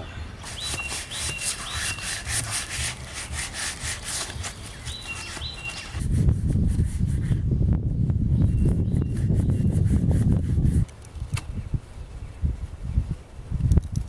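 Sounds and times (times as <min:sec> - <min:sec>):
bird chirping: 0:00.0 - 0:06.1, 0:08.3 - 0:09.9
sanding strokes on wood: 0:00.4 - 0:07.4, 0:08.9 - 0:10.9.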